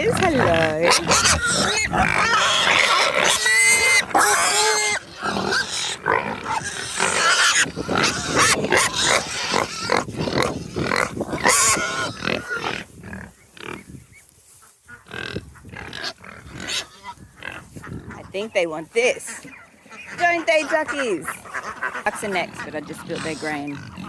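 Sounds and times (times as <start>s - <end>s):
pigs squealing and grunting: 0.0s - 14.0s, 14.9s - 24.0s.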